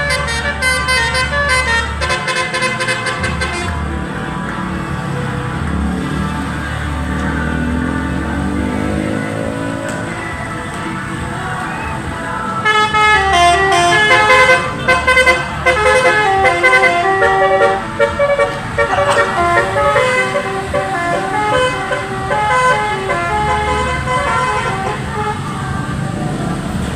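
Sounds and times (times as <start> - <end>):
multi-tone air horn playing a tune: 0.0 - 3.8, 12.6 - 25.8.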